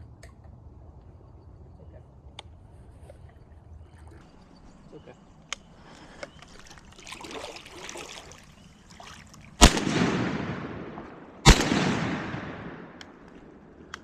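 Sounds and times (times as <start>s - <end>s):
shotgun shots with echo: 9.6s - 13.6s.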